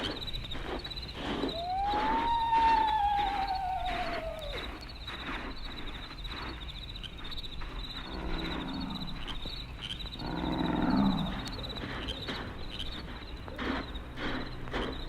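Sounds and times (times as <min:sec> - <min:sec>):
high chirping like crickets: 0:00.0 - 0:15.0
falling eerie tone: 0:01.5 - 0:04.8
low growling calls: 0:01.5 - 0:04.8, 0:08.0 - 0:09.3, 0:10.2 - 0:11.6.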